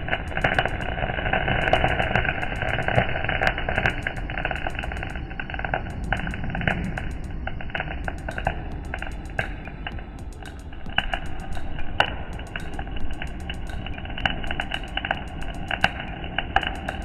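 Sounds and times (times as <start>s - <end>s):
welding torch flame hissing: 0.0s - 9.6s
crackling pops and clicks: 0.0s - 17.0s.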